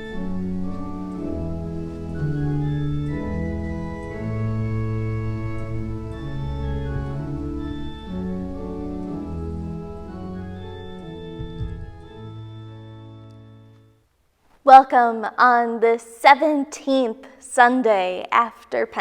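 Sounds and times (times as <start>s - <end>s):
organ playing sustained chords: 0.0s - 13.9s.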